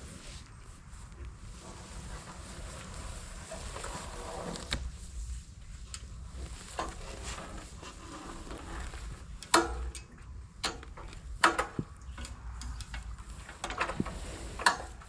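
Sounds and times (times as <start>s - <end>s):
sharp knocks and clicks: 9.5s - 14.8s.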